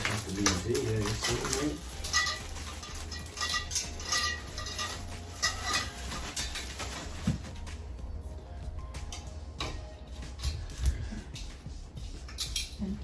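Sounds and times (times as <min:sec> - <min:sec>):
metal parts clinking: 0:00.0 - 0:07.1, 0:12.2 - 0:12.8.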